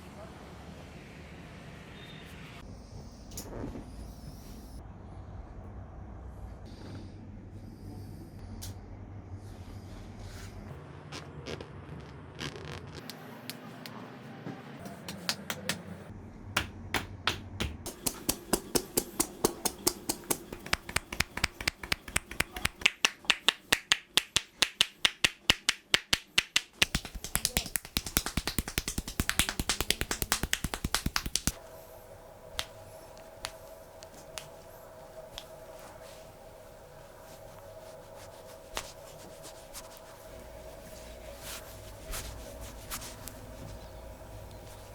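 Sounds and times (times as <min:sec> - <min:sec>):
faint steady hum: 0:13.1 - 0:44.9
hands slapping skin: 0:14.9 - 0:15.8, 0:16.6 - 0:31.6, 0:32.6 - 0:34.7, 0:35.3 - 0:35.6, 0:37.3 - 0:40.1.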